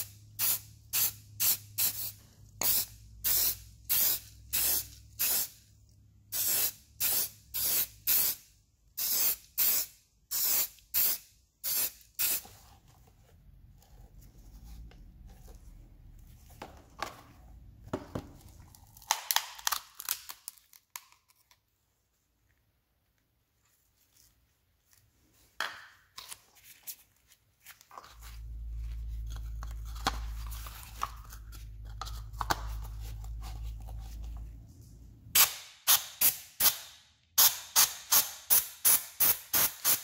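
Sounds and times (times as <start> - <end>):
spray paint hissing: 0.0 - 5.6, 6.3 - 8.4, 9.0 - 12.4, 35.4 - 40.0.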